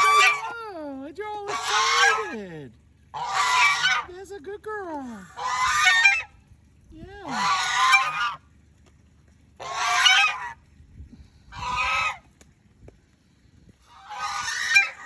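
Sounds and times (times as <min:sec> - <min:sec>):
goose honking: 0:00.0 - 0:00.6, 0:01.4 - 0:02.4, 0:03.1 - 0:04.1, 0:05.2 - 0:06.4, 0:07.3 - 0:08.4, 0:09.6 - 0:10.6, 0:11.5 - 0:12.2, 0:13.8 - 0:15.0.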